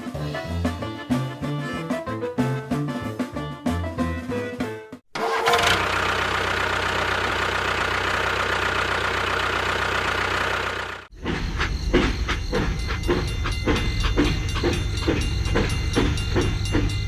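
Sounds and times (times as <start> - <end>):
music: 0.0 - 5.1
engine starting and running: 5.1 - 17.0.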